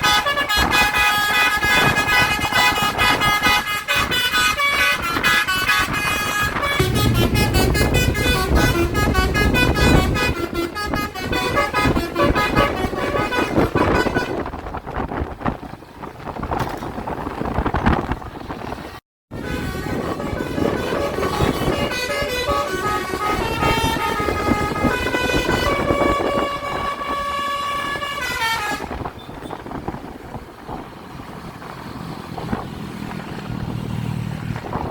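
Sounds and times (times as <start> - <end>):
musical bus horn tune: 0.0 - 14.6, 19.3 - 29.6
deep vehicle rumble: 1.8 - 19.0, 19.6 - 34.9.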